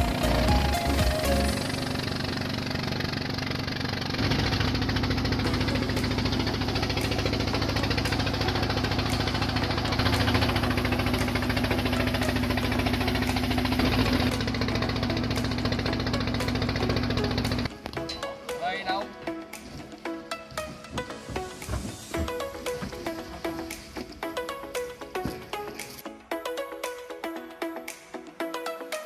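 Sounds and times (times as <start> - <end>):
small boat engine running: 0.0 - 17.8.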